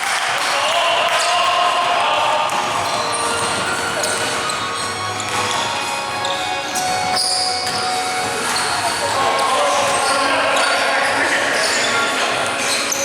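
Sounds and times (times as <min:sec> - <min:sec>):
music playing: 0:00.1 - 0:13.0
basketball bouncing on court: 0:05.2 - 0:05.6.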